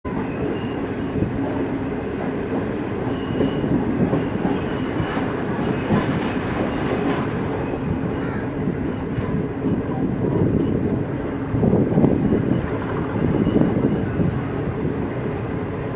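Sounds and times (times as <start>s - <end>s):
train wheels clattering over rails: 0.4s - 15.4s.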